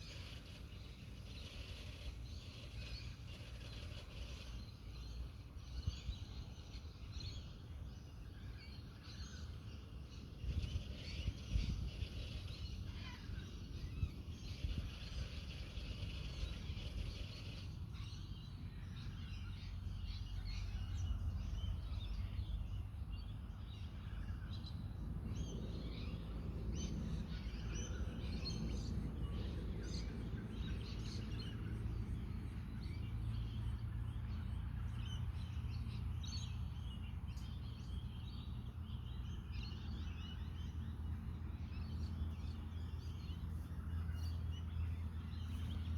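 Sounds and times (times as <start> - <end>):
small birds chirping: 0.0 - 45.9
wind on microphone: 10.4 - 17.6.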